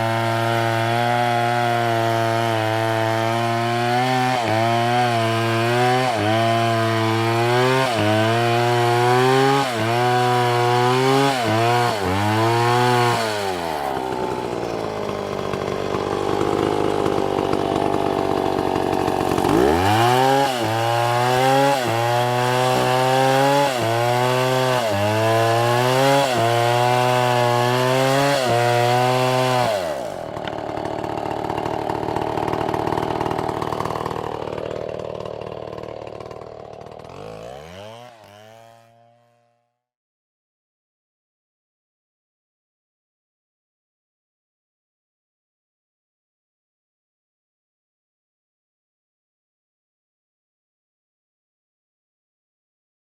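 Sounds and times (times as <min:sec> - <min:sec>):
chainsaw cutting wood: 0:00.0 - 0:39.8.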